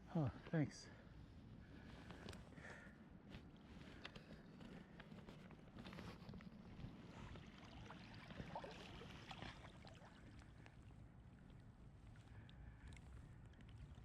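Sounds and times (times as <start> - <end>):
flowing river water: 7.1 - 14.0.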